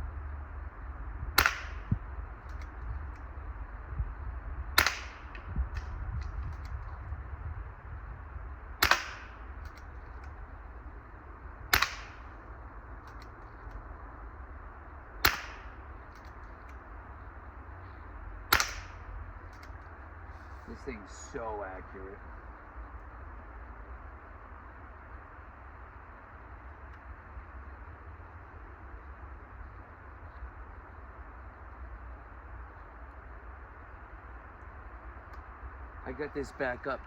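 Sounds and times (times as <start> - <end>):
air rifle shots: 1.4 - 2.8, 4.7 - 6.8, 8.8 - 10.4, 11.6 - 13.8, 15.2 - 16.8, 18.5 - 19.7.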